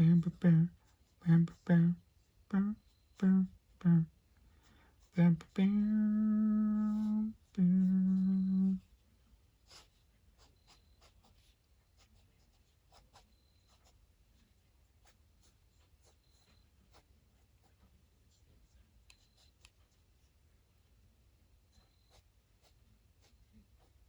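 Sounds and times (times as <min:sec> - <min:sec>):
ink pen scratching on paper: 0:09.6 - 0:14.0, 0:15.0 - 0:20.3, 0:21.8 - 0:24.0.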